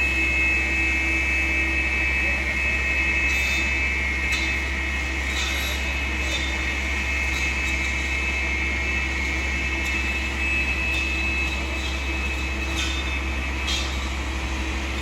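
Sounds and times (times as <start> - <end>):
distant skidder engine drone: 0.0 - 15.0
high-pitched whine: 0.0 - 15.0.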